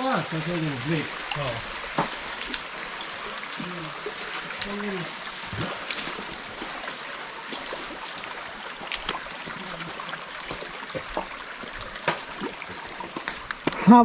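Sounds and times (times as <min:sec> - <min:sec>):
stream water rushing: 0:00.0 - 0:14.0.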